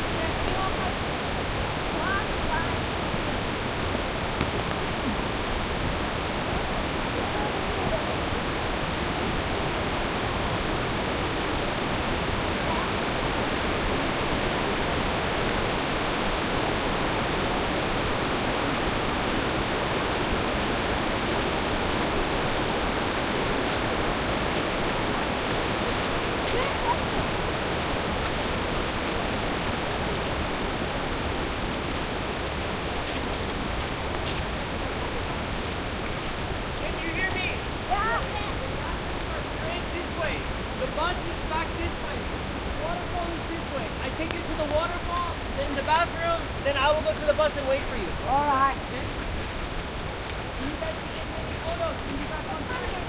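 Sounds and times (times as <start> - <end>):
waterfall roaring: 0.0 - 53.0.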